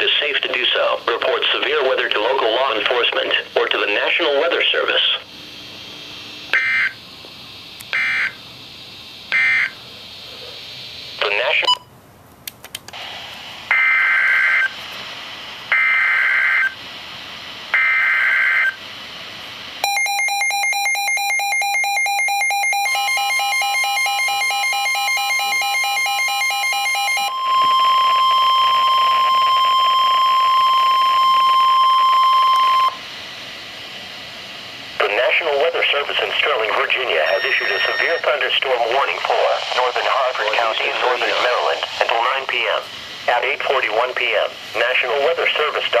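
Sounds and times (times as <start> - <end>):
steady warning alarm tone: 2.6 - 7.0, 7.9 - 8.5, 9.3 - 9.9, 13.7 - 14.8, 15.7 - 16.8, 17.7 - 18.8, 19.8 - 33.1, 35.0 - 45.8
harsh electronic alarm beeping: 6.5 - 7.0, 7.9 - 8.4, 9.3 - 9.8, 11.2 - 11.9, 13.7 - 14.7, 15.7 - 16.8, 17.8 - 18.8, 19.8 - 33.0, 36.4 - 43.8
warbling digital data bursts: 35.2 - 46.0.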